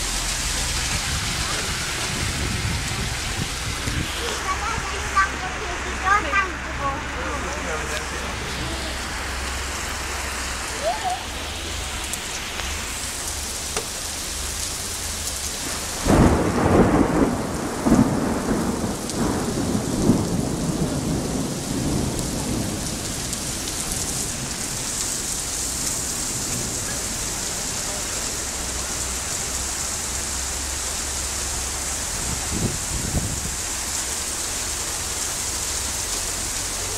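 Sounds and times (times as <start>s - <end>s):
rumbling thunderclap: 0.0s - 6.3s, 15.6s - 27.4s, 32.0s - 33.7s
heavy rain falling: 0.0s - 36.9s.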